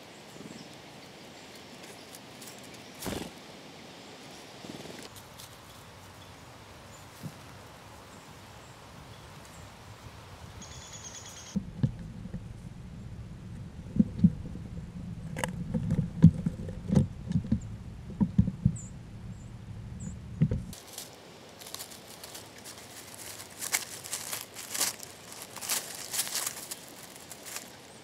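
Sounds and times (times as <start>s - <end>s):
low rumble: 11.6s - 20.8s
faint rustles: 20.6s - 28.0s.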